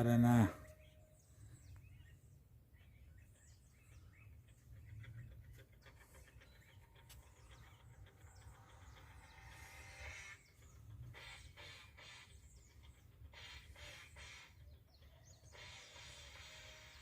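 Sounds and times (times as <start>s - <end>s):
faint birds chirping: 0.0s - 17.0s.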